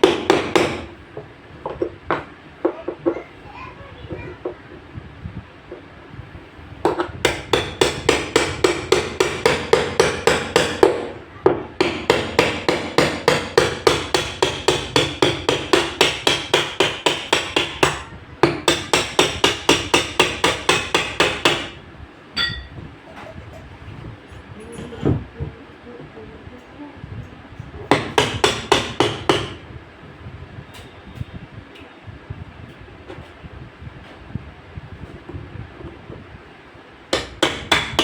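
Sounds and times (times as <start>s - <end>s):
hammer striking rapidly: 0.0s - 0.9s, 7.2s - 11.1s, 11.8s - 21.8s, 27.9s - 29.6s, 37.1s - 38.0s.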